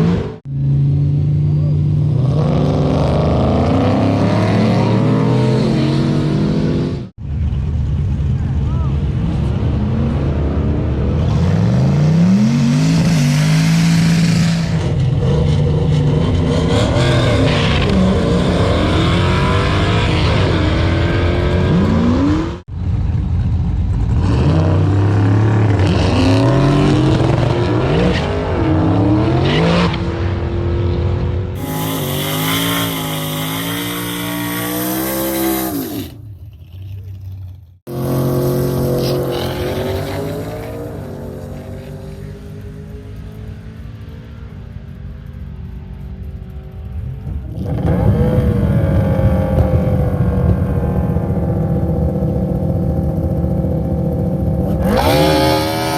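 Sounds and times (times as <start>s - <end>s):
car engine accelerating hard: 24.1s - 36.2s, 37.9s - 55.9s.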